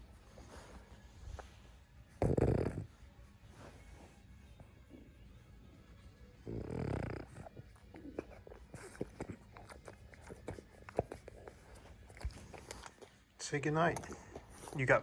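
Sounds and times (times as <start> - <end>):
dog grumbling: 2.2 - 2.9, 6.4 - 11.1.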